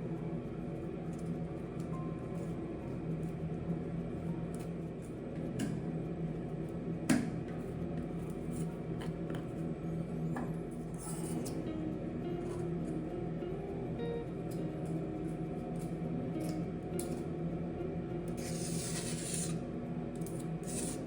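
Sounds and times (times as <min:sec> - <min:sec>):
steady low hum: 0:00.0 - 0:21.0
light clicks and scrapes of handwork: 0:20.2 - 0:21.0.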